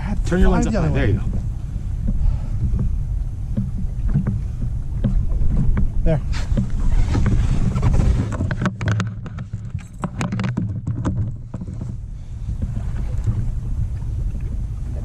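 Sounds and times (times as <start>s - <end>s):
boat rumbling: 0.0s - 15.0s
wind on microphone: 0.0s - 15.0s
knocks and clicks from handling: 8.3s - 11.9s.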